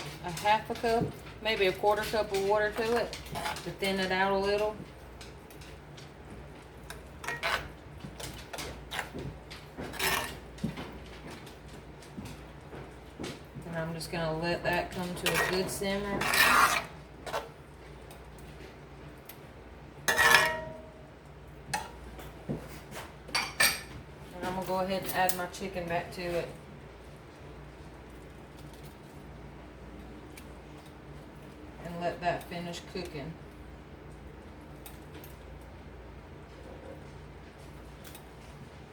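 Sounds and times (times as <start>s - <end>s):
low steady hum: 0.0s - 38.9s
spoon scraping a pan: 1.5s - 4.7s, 6.9s - 7.8s, 9.9s - 10.5s, 14.8s - 17.6s, 20.0s - 21.0s.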